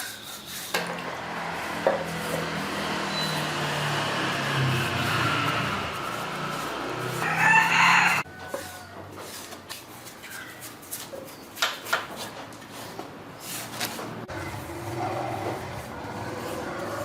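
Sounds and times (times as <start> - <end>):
rooster crowing: 7.1 - 9.1.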